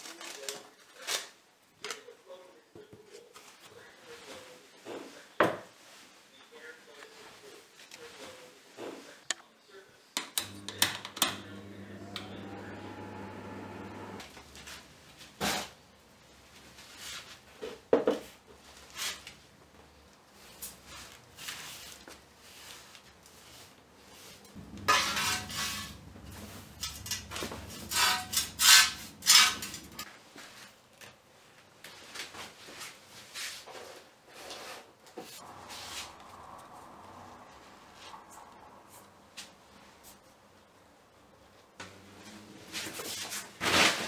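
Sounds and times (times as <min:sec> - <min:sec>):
kitchen utensils clinking: 0:24.4 - 0:30.1.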